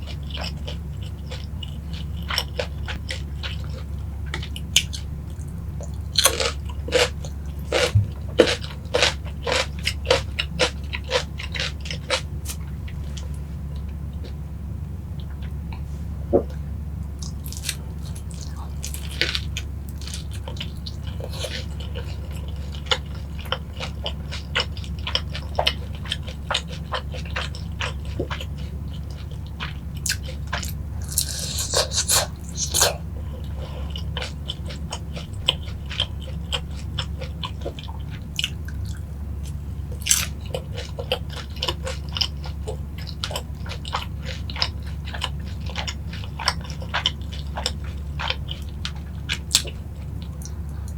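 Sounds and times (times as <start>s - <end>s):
crunchy chewing of fried chicken: 0.0s - 50.9s
low hum: 0.8s - 25.1s, 47.2s - 50.9s.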